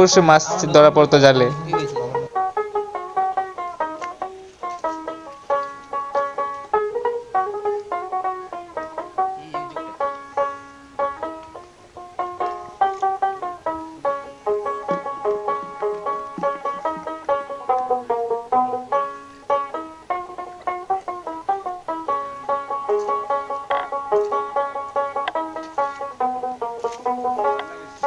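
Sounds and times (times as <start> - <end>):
plucked banjo melody: 0.0 - 28.0.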